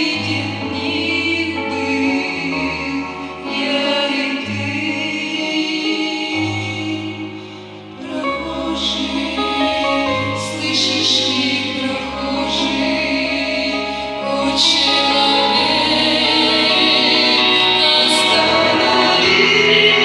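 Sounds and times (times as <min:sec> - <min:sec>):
person singing worship song: 0:00.0 - 0:20.0
steady bass line: 0:07.9 - 0:20.0.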